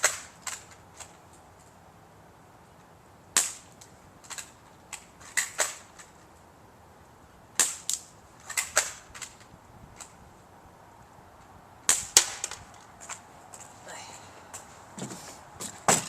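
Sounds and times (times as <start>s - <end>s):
air rifle shots: 7.6s - 9.2s, 11.9s - 12.6s.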